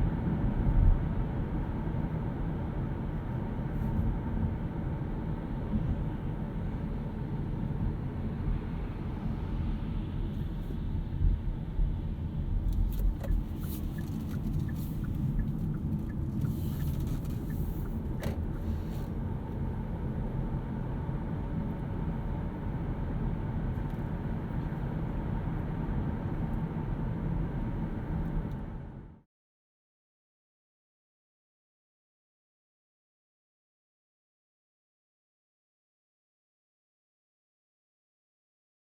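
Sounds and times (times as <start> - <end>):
road and tyre rumble: 0.0 - 29.2.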